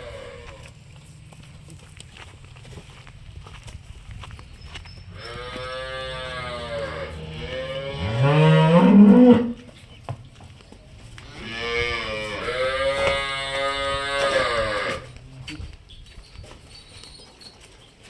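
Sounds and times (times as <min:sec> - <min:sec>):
cattle mooing: 0:00.0 - 0:00.8, 0:05.2 - 0:09.7, 0:11.2 - 0:15.1.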